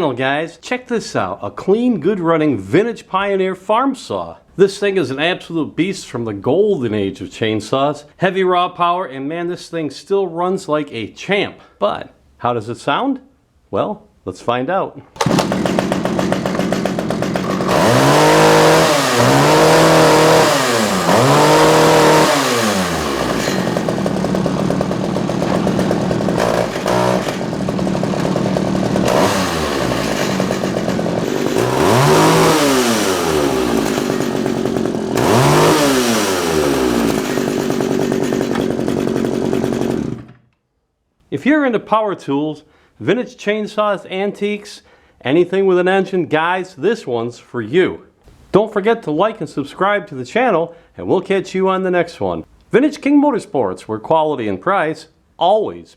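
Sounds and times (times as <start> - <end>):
chainsaw revving: 15.2 - 40.4.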